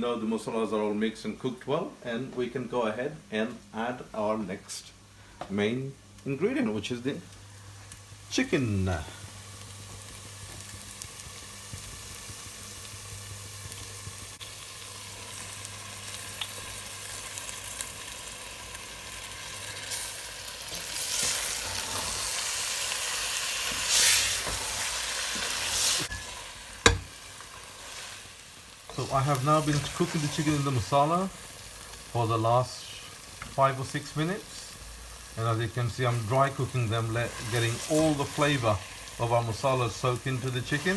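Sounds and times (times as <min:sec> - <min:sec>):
chicken sizzling in a pan: 0:06.2 - 0:40.9
sharp knock on pan: 0:26.8 - 0:27.1.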